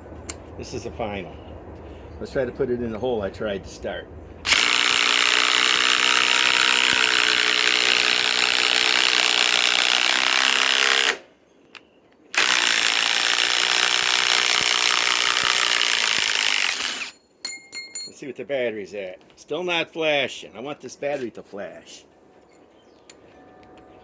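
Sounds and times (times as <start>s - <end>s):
impact wrench hammering: 4.5s - 11.2s, 12.4s - 18.1s.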